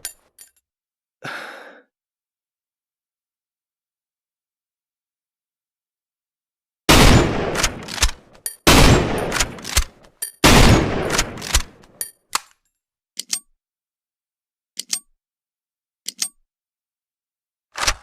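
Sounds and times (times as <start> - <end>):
rifle shots: 6.9 - 11.8
rifle bolt clicks: 7.6 - 12.5, 13.2 - 13.5, 14.8 - 15.1.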